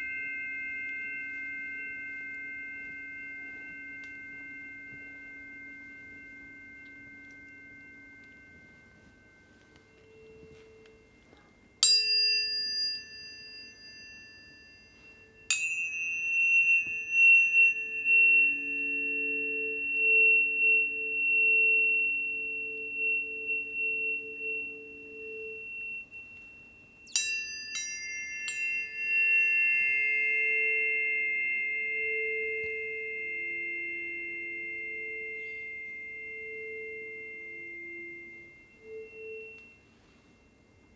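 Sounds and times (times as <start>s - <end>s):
tuning forks ringing: 0.0s - 40.9s.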